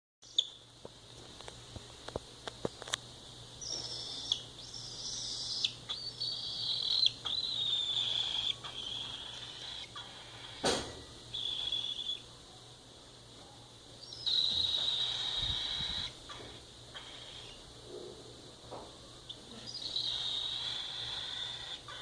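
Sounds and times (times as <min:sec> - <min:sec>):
cockatiel screaming: 0:03.9 - 0:10.7, 0:11.3 - 0:12.2, 0:14.0 - 0:17.6, 0:19.6 - 0:22.0.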